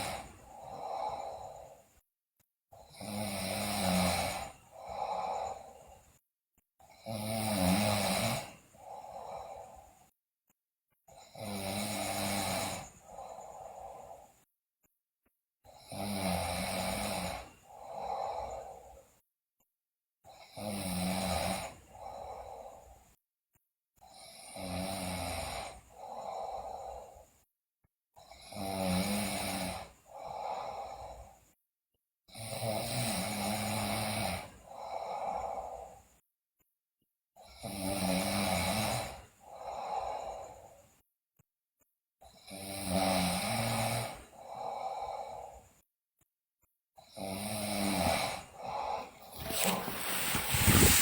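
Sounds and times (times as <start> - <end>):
girl snoring loudly: 2.9 - 5.6, 11.4 - 13.3, 47.2 - 51.0.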